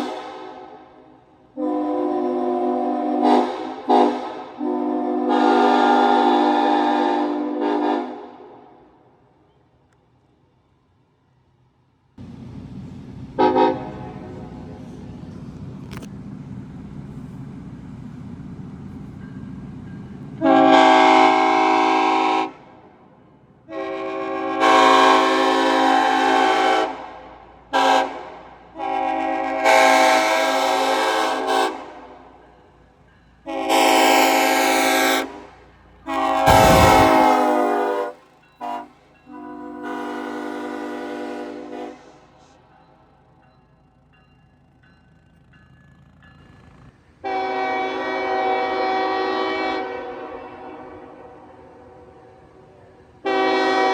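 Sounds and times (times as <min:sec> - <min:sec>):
train horn blasts: 0:01.5 - 0:08.8, 0:13.4 - 0:14.6, 0:20.4 - 0:22.7, 0:23.7 - 0:27.1, 0:27.7 - 0:32.1, 0:33.5 - 0:42.2, 0:47.2 - 0:52.3, 0:53.2 - 0:53.9
low rumble: 0:36.5 - 0:37.5.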